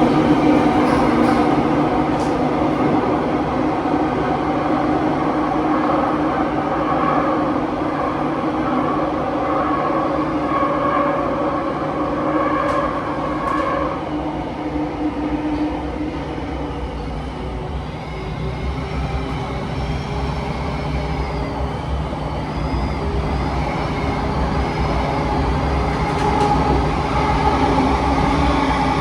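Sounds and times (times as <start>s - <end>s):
metro train rumble: 0.0s - 29.0s.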